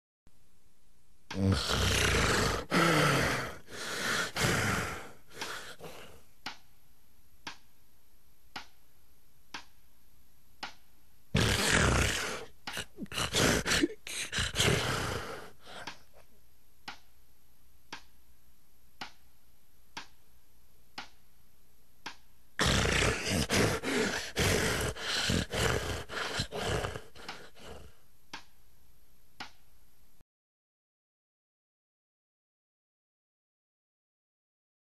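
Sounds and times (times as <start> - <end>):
loud snoring: 1.4 - 6.1, 11.4 - 15.9, 22.6 - 27.9
gasping snorts: 1.4 - 6.2, 11.4 - 16.1, 22.6 - 28.0.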